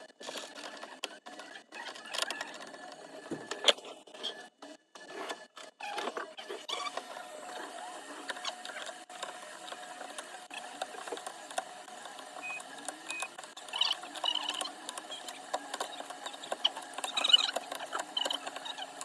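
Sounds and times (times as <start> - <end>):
small machine humming: 0.0 - 19.0
taps clicks and scrapes of tools: 8.2 - 19.0.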